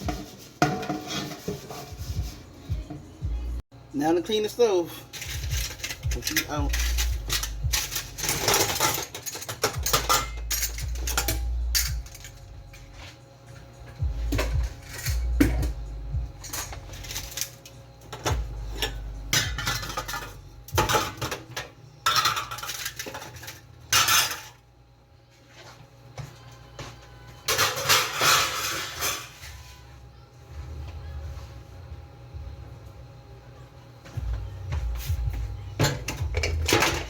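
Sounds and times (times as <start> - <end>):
metal kitchenware clanking: 0.0 - 2.2, 5.0 - 13.1, 16.4 - 24.6, 27.4 - 29.8, 35.7 - 37.0.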